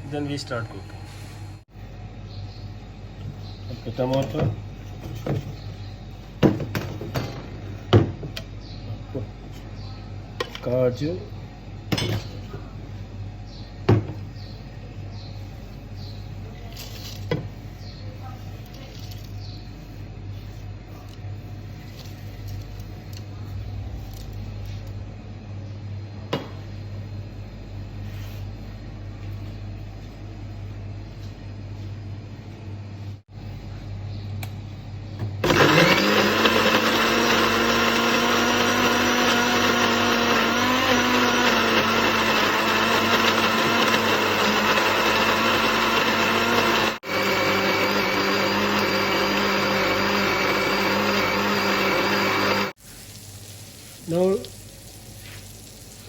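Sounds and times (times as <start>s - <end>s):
low hum: 21.5s - 32.8s
blender whining at high speed: 35.4s - 52.8s.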